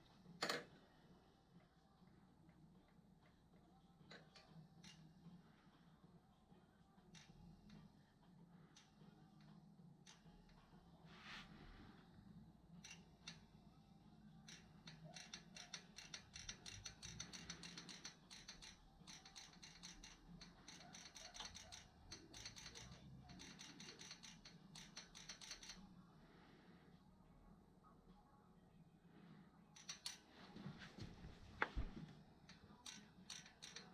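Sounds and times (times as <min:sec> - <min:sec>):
fast mechanical clicking: 0:14.5 - 0:25.8, 0:29.8 - 0:30.3, 0:31.6 - 0:33.9.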